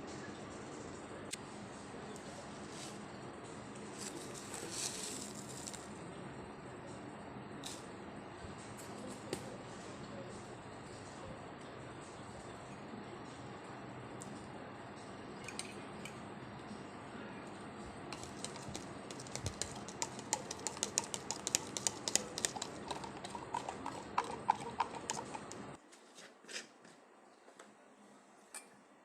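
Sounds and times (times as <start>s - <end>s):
kitchen utensils clicking and tapping: 18.2s - 25.8s.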